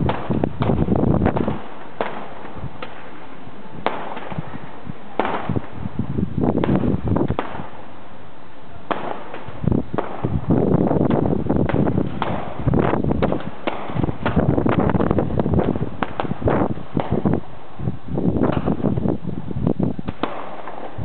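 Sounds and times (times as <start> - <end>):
fireworks bangs: 0.0 - 8.0, 8.7 - 21.0
crackling fireworks bangs: 0.0 - 8.1, 8.7 - 21.0.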